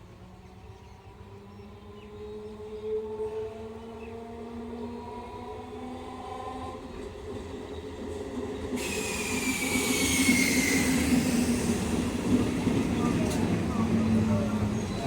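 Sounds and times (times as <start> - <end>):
train approaching: 0.1 - 15.0
wheels squealing on rails: 8.7 - 15.0.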